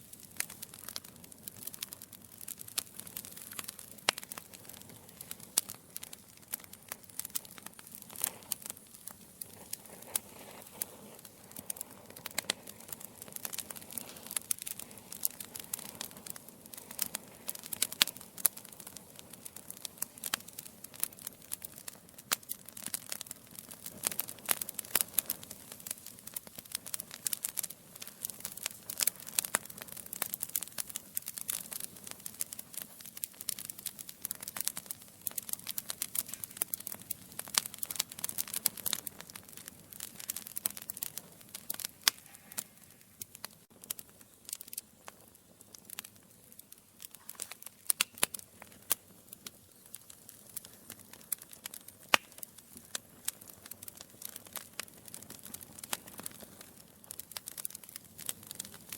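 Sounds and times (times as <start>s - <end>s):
logs crackling in fireplace: 0.0s - 58.9s
soft fire hiss: 0.0s - 58.9s.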